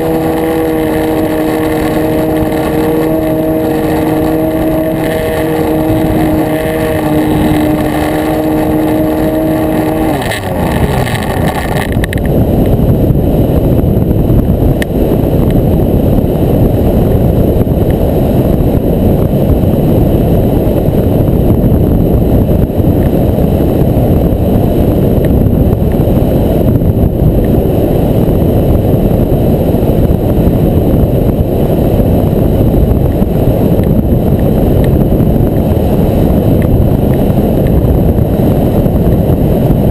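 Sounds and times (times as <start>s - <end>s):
model plane engine running: 0.0s - 12.3s
wind rushing over camera: 0.0s - 39.9s.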